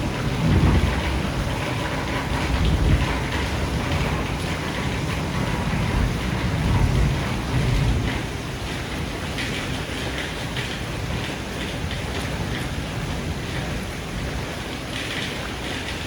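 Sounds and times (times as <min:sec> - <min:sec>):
rolling thunder: 0:00.0 - 0:09.4
heavy rain pouring: 0:00.0 - 0:16.0.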